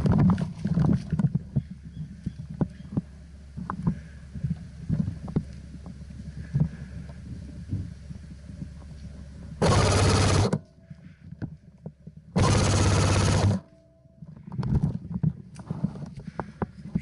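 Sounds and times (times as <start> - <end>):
airsoft gun full-auto bursts: 9.6 - 10.6, 12.4 - 13.6.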